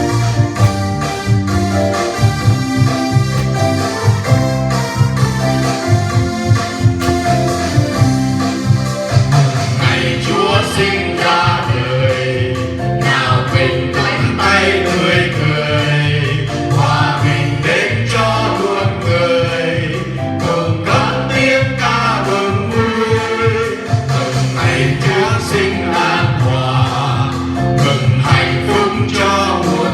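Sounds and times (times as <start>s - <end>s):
instrumental accompaniment with beat: 0.0s - 29.9s
choir singing: 9.8s - 29.9s.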